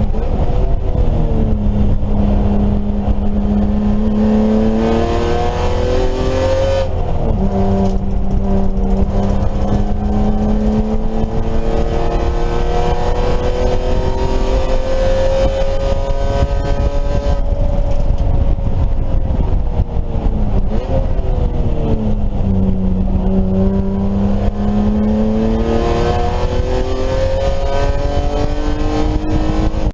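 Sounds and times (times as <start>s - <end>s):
race car engine at high revs: 0.0s - 29.9s.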